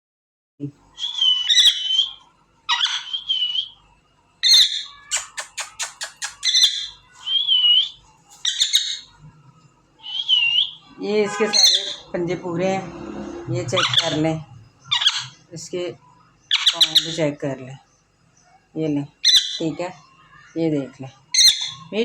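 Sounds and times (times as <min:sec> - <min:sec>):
parrot squawking: 0:01.0 - 0:03.8, 0:04.4 - 0:09.1, 0:10.0 - 0:12.2, 0:13.7 - 0:15.5, 0:16.5 - 0:17.2, 0:19.2 - 0:20.5, 0:21.3 - 0:22.0
parrot whistling: 0:01.0 - 0:03.8, 0:04.4 - 0:09.1, 0:10.0 - 0:10.8, 0:13.8 - 0:14.2, 0:14.9 - 0:15.4
parrot clicks: 0:05.1 - 0:06.5.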